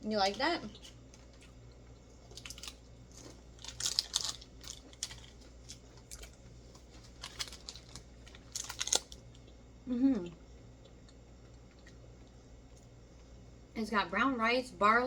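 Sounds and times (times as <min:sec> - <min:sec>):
plastic wrapper crinkling: 0:02.2 - 0:09.3
crunching crispy snack: 0:02.2 - 0:09.5.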